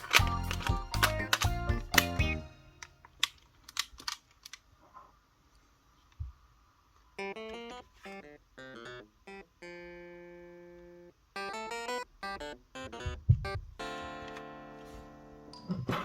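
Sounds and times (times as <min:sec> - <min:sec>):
plucked guitar-like music: 0:00.0 - 0:02.5, 0:11.4 - 0:16.0
sharp clicks: 0:00.0 - 0:04.6.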